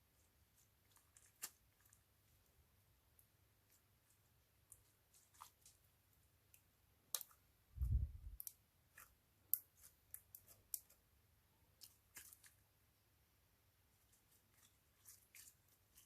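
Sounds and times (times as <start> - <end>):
small items clicking and tapping: 6.5 - 7.4.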